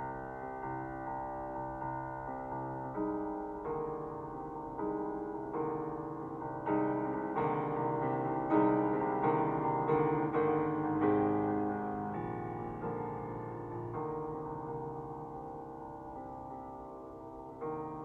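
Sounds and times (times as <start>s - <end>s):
gentle solo piano music: 0.0s - 18.0s.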